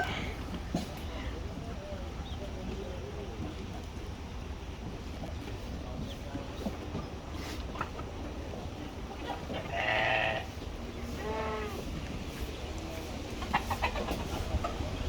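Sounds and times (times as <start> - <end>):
sheep bleating: 9.7 - 10.5.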